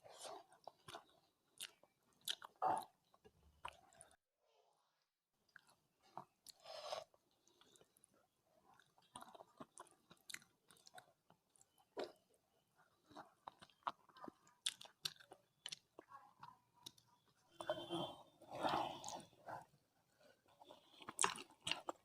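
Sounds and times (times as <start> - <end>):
chewing with wet mouth clicks: 0.2 - 4.2, 7.4 - 16.1, 16.8 - 17.4, 20.8 - 22.0.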